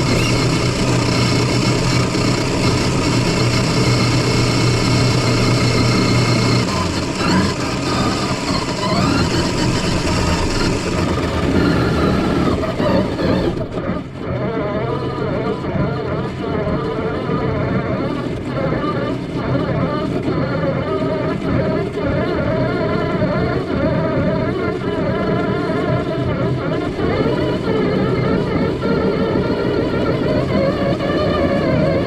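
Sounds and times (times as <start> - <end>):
motor humming: 0.0 - 15.2.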